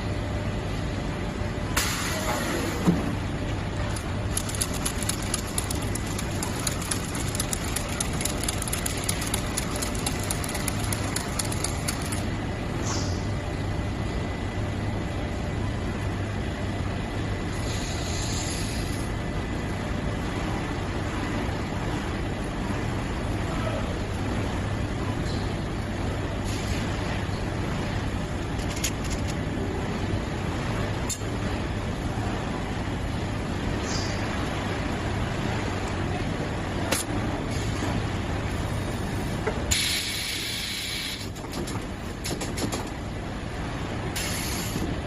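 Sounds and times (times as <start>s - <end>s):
machine humming: 3.1s - 15.7s
fast fine ticking: 4.3s - 12.2s.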